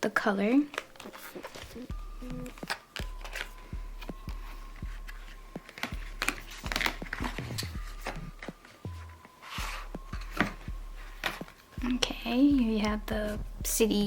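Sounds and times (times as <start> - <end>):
cd packaging clicks and taps: 0.7 - 8.8, 10.0 - 13.2.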